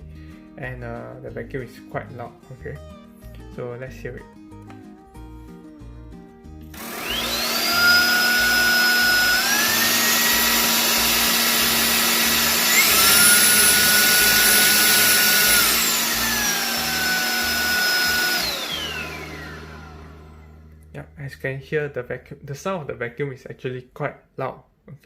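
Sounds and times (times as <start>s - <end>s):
vacuum cleaner motor whining: 6.7s - 20.7s.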